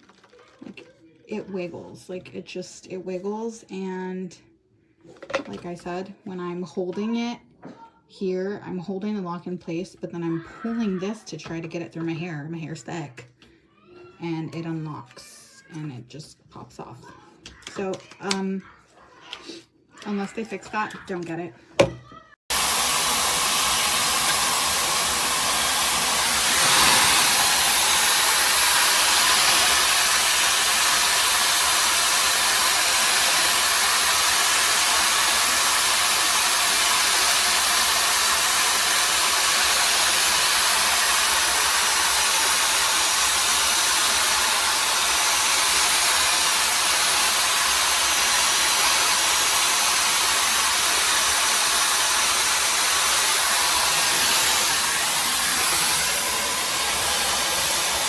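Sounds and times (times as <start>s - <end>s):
hair dryer blowing air: 22.5s - 58.0s.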